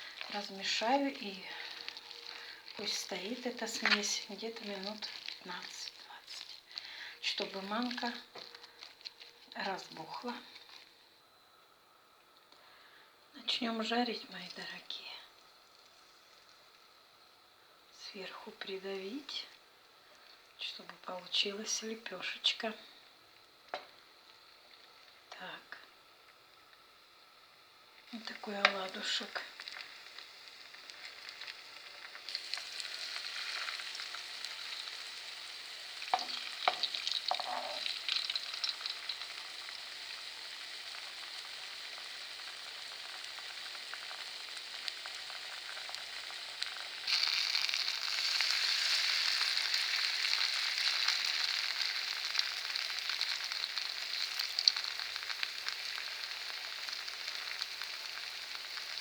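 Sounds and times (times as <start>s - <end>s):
fritters sizzling in oil: 0.0s - 11.0s, 23.7s - 59.0s.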